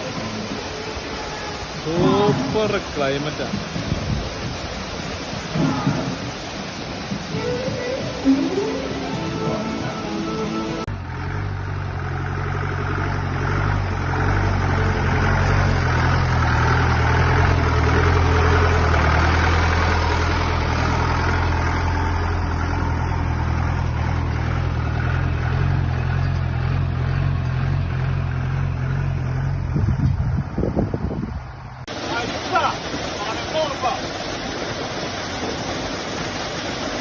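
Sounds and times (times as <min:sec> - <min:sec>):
vehicle engine droning: 0:08.2 - 0:32.2.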